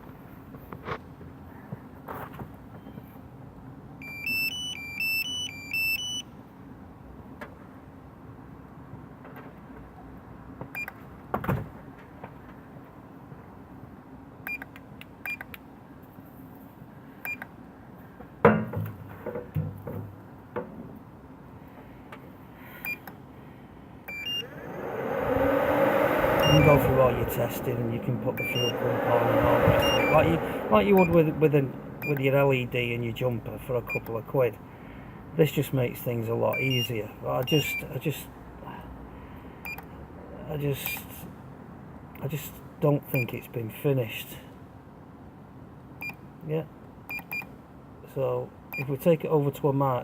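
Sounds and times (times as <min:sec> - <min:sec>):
steady low hum: 0:21.4 - 0:35.4.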